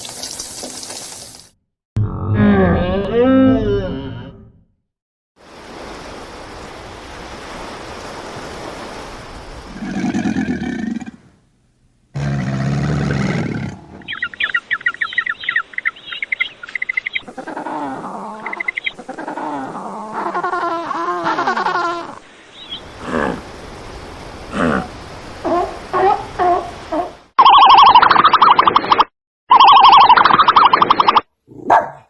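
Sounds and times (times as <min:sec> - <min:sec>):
deep low animal call: 0:02.0 - 0:04.5, 0:17.3 - 0:22.2.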